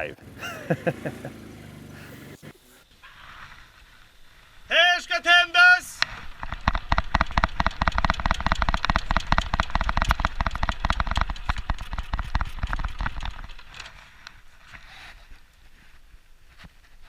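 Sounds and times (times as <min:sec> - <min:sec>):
fuse crackling and sputtering: 0:06.0 - 0:14.8.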